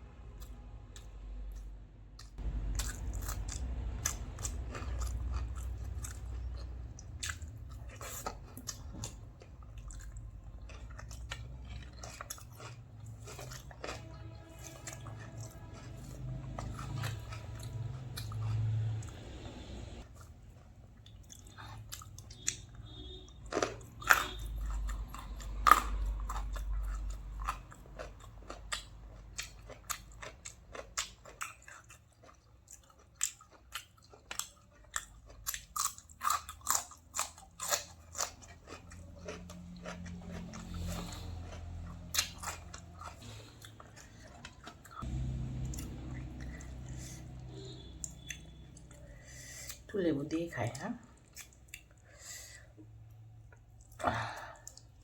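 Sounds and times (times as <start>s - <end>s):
person chewing and crunching food: 0.2s - 55.0s.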